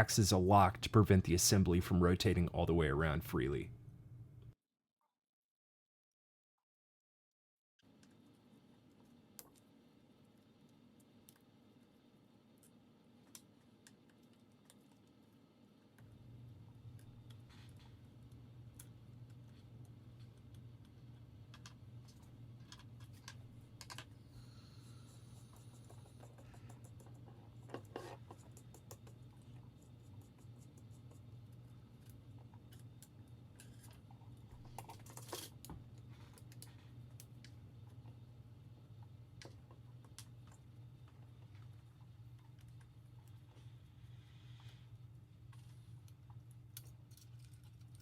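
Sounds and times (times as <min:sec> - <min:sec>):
low steady hum: 0:00.0 - 0:04.6.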